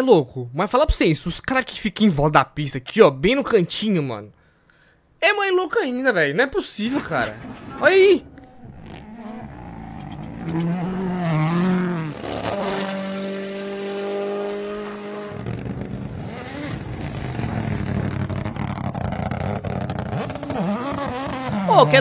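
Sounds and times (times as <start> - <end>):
road and tyre noise: 6.8 - 22.0
rally car engine revving: 6.9 - 22.0.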